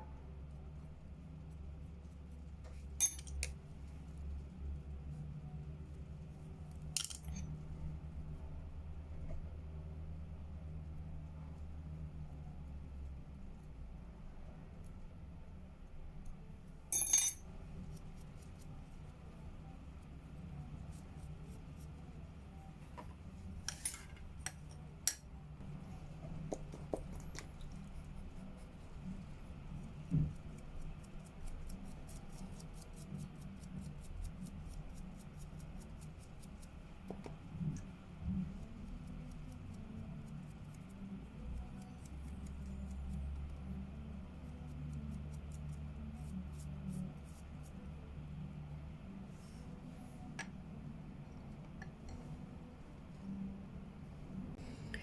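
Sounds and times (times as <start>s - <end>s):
low steady hum: 0.0s - 55.0s.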